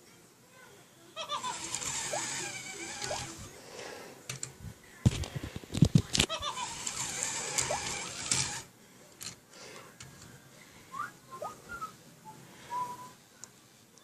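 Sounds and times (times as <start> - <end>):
robot squeaky rising chirps: 1.4 - 3.3
robot buzzy electronic burst: 1.4 - 3.4.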